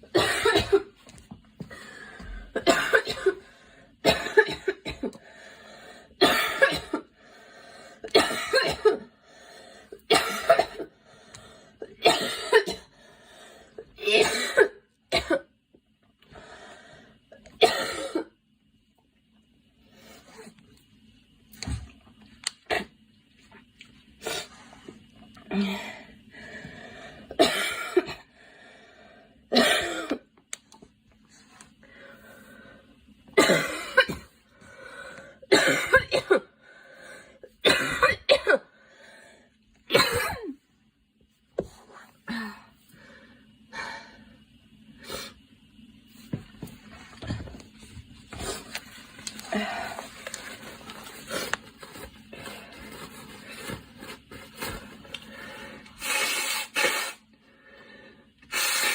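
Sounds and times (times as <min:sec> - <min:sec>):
woman coughing: 0:00.1 - 0:01.0, 0:02.5 - 0:03.4, 0:04.0 - 0:05.2, 0:06.2 - 0:07.1, 0:08.1 - 0:09.1, 0:10.1 - 0:10.9, 0:11.8 - 0:12.9, 0:14.0 - 0:15.5, 0:17.6 - 0:18.4, 0:27.4 - 0:28.3, 0:29.5 - 0:30.3, 0:33.4 - 0:34.3, 0:35.5 - 0:36.5, 0:37.6 - 0:38.7, 0:39.9 - 0:40.6.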